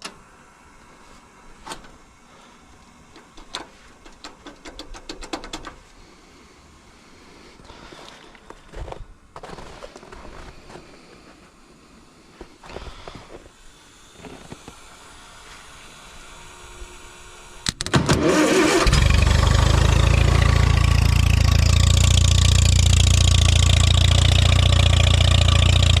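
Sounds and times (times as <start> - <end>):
tractor engine cranking and running: 1.6 - 2.1, 2.8 - 5.9, 17.6 - 26.0
sharp clicks: 3.1 - 5.8, 17.6 - 18.2.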